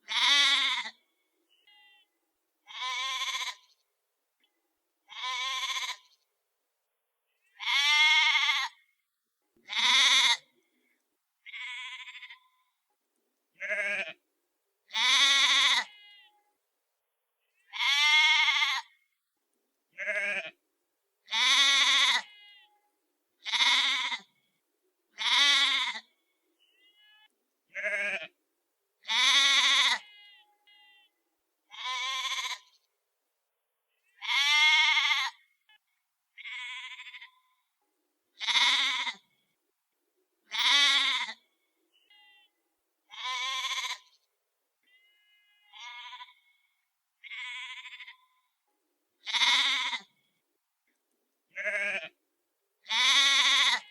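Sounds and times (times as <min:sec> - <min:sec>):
sheep bleating: 0:00.1 - 0:01.0, 0:01.6 - 0:02.1, 0:02.7 - 0:03.8, 0:05.1 - 0:06.2, 0:07.6 - 0:08.9, 0:09.6 - 0:10.4, 0:11.4 - 0:12.6, 0:13.6 - 0:14.2, 0:14.9 - 0:16.4, 0:17.7 - 0:19.0, 0:20.0 - 0:20.6, 0:21.3 - 0:22.8, 0:23.4 - 0:24.3, 0:25.2 - 0:28.4, 0:29.0 - 0:32.8, 0:34.1 - 0:35.8, 0:36.4 - 0:37.6, 0:38.4 - 0:39.3, 0:40.5 - 0:41.4, 0:42.0 - 0:44.2, 0:44.8 - 0:48.5, 0:49.2 - 0:50.2, 0:51.5 - 0:52.2, 0:52.9 - 0:53.9.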